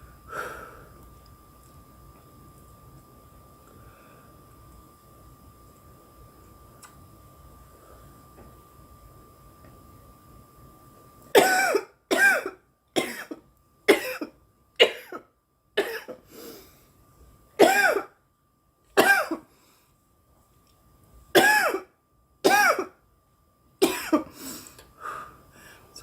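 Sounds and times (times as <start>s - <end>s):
woman coughing hard: 11.4s - 16.2s, 17.6s - 18.2s, 19.0s - 19.5s, 21.4s - 23.0s, 23.8s - 24.4s.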